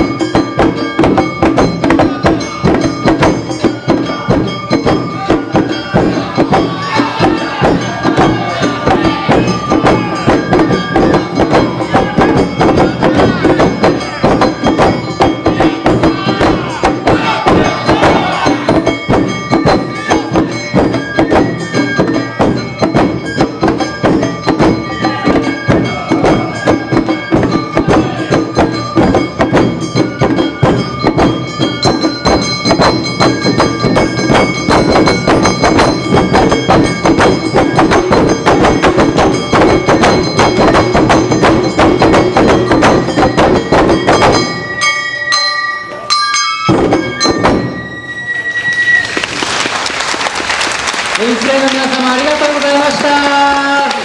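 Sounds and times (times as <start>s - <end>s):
clanging gong: 0.0s - 49.3s
shamisen: 0.0s - 49.5s
drums beating: 0.0s - 54.0s
voices calling out: 1.8s - 21.0s, 24.7s - 29.0s
bamboo flute: 47.8s - 49.5s.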